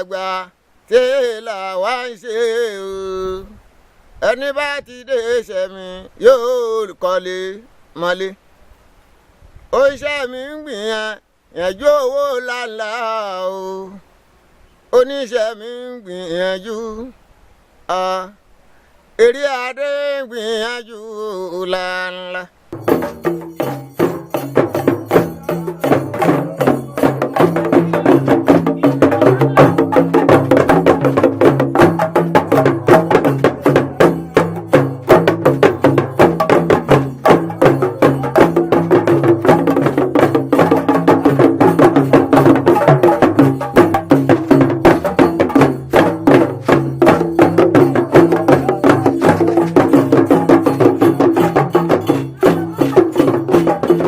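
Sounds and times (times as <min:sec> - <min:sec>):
traditional drumming: 0:22.7 - 0:54.0.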